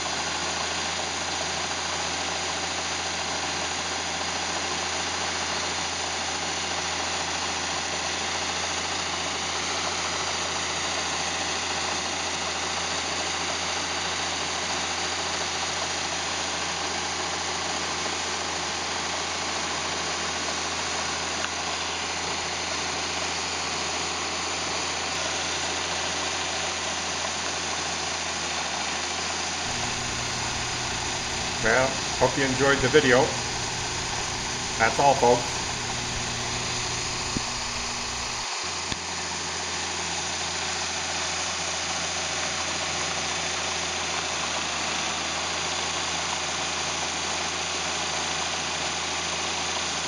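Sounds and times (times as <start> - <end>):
combine harvester running: 29.7 - 38.4.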